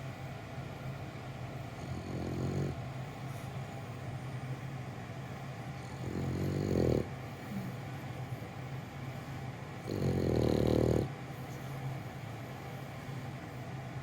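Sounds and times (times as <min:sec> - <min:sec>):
steady low hum: 0:00.0 - 0:14.0
dog snoring: 0:01.7 - 0:02.8, 0:05.8 - 0:07.8, 0:09.8 - 0:11.8.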